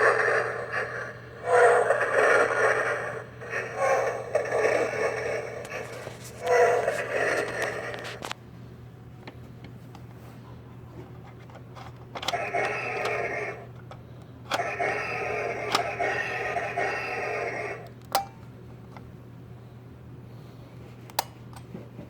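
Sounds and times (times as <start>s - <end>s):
electronic toy buzzing: 0.0s - 8.1s, 12.3s - 13.7s, 14.5s - 17.9s
steady low hum: 0.0s - 22.0s.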